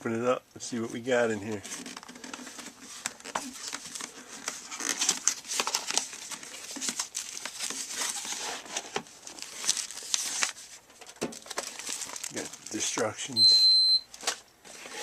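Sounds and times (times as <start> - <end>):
packaging being torn open: 11.4 - 12.8.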